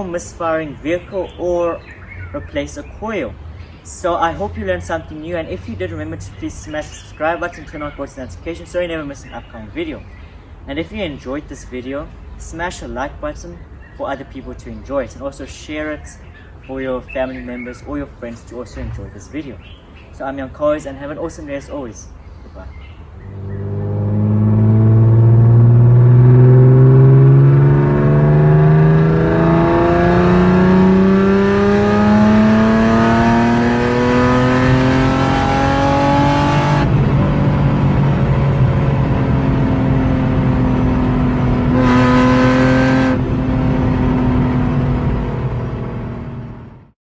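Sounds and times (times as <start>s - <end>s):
car engine accelerating: 23.2s - 47.0s.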